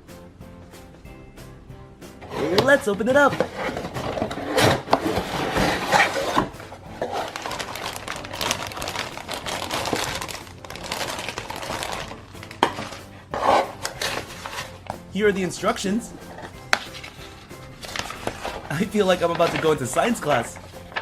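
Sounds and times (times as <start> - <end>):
cardboard and packaging rustling: 2.2 - 15.0, 15.7 - 21.0
plastic pieces clattering: 2.5 - 13.0, 16.3 - 21.0.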